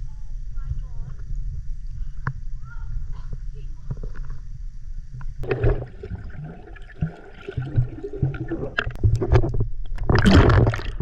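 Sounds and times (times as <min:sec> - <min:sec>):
water sloshing and splashing: 0:05.4 - 0:11.0.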